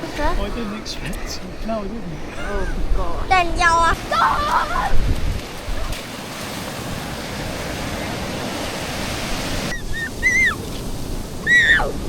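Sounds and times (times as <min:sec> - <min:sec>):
sea surf washing: 0:00.0 - 0:12.0
wind on microphone: 0:02.6 - 0:06.1.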